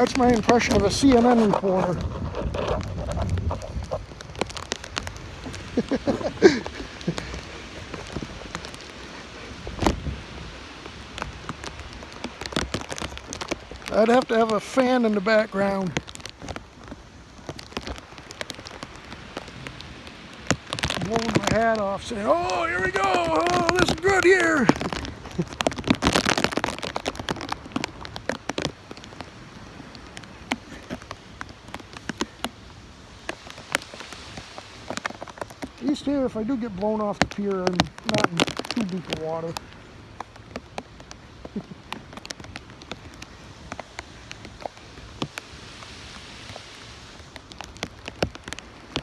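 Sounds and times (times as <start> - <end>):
wind gusting across microphone: 0.0 - 49.0
small ticks: 22.9 - 49.0.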